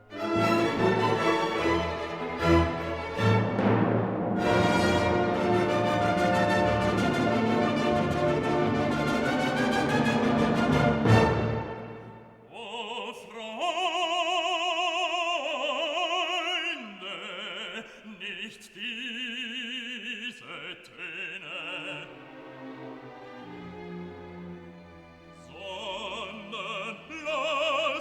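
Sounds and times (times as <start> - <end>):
orchestral music: 0.0 - 12.7, 21.6 - 28.0
operatic singing with vibrato: 0.0 - 28.0.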